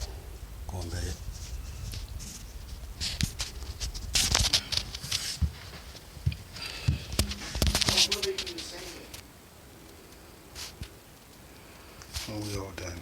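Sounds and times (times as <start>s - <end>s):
rustles of hands handling wiring: 0.8s - 9.2s, 10.6s - 11.4s, 12.0s - 13.0s.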